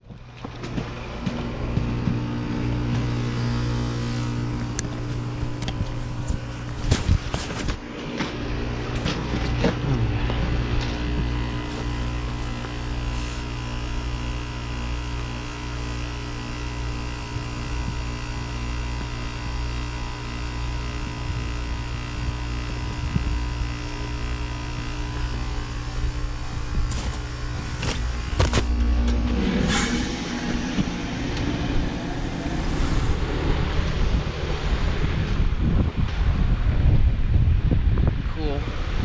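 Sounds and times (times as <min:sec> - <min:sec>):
compressor hum: 0:00.0 - 0:39.0
brief falling tone: 0:28.7 - 0:34.2.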